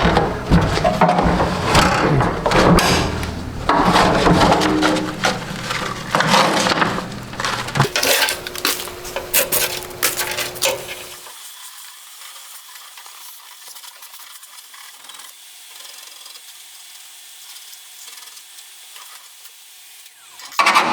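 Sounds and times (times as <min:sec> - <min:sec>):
metal tool chest clattering: 0:00.0 - 0:11.2.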